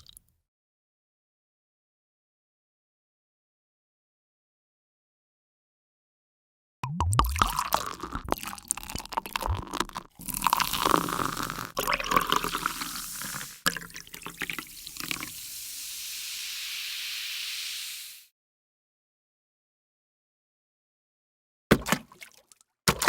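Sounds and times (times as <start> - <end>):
running water rushing hiss: 10.5 - 18.3
water splashing and dripping: 10.6 - 18.2.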